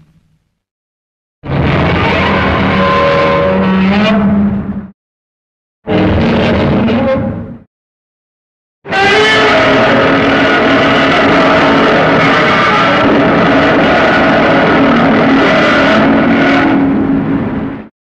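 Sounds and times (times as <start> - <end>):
monster roar: 8.9 - 17.0.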